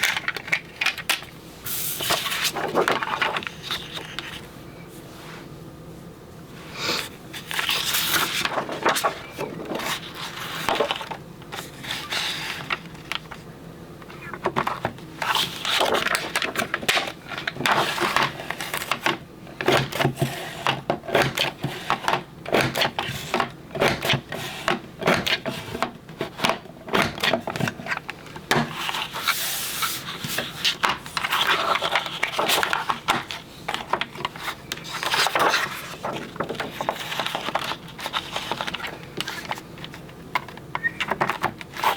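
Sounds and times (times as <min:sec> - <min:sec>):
paper punch clicking: 0:16.8 - 0:27.7
paper scraping: 0:28.7 - 0:39.6.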